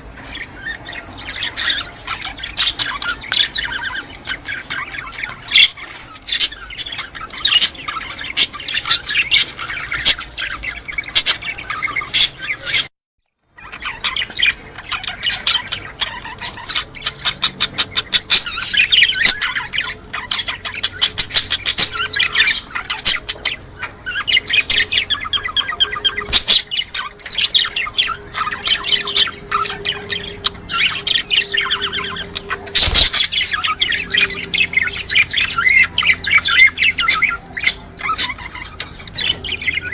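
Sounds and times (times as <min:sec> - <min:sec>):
cage birds chirping: 0:00.0 - 0:39.9.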